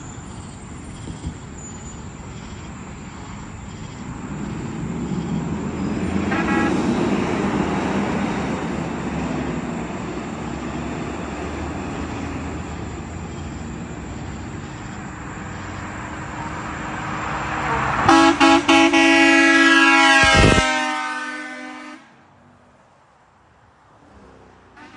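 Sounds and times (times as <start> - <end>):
traffic road and engine noise: 0.0 - 24.9
truck air horn blasts: 6.0 - 8.3, 17.4 - 22.2.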